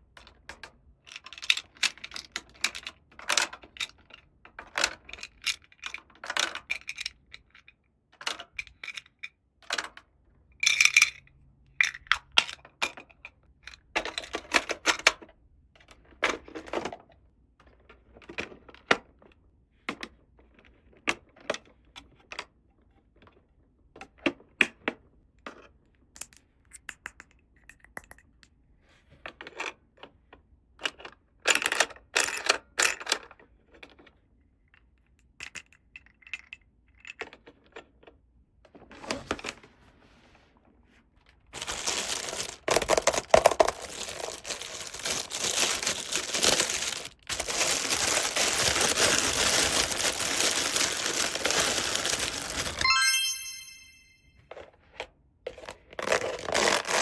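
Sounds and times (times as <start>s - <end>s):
packaging rustling: 41.5s - 52.9s, 56.0s - 57.0s.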